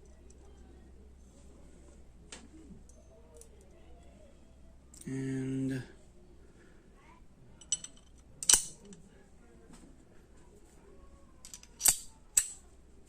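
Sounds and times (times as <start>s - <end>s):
metal ratchet parts clicking: 7.6s - 9.0s, 11.4s - 12.6s.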